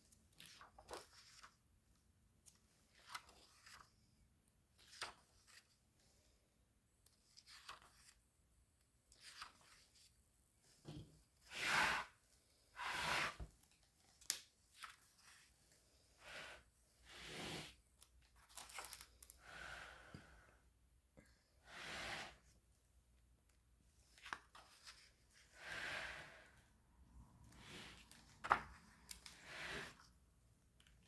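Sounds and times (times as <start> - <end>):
book pages turning: 0.4 - 1.6, 2.4 - 3.9, 7.1 - 8.2, 9.1 - 10.0, 13.8 - 15.4, 27.9 - 30.1.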